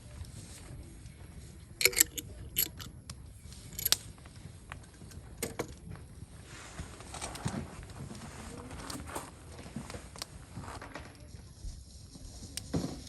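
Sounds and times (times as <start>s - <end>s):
metal pieces clinking: 1.8s - 2.9s.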